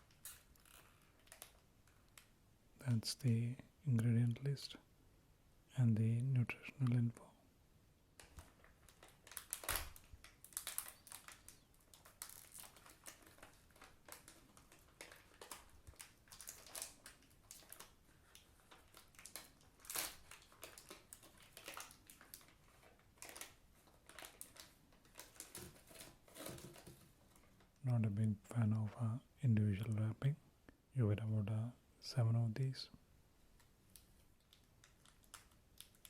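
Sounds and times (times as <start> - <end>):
plastic candy wrapper crinkling: 0.0 - 2.3, 8.2 - 27.9, 33.6 - 36.0.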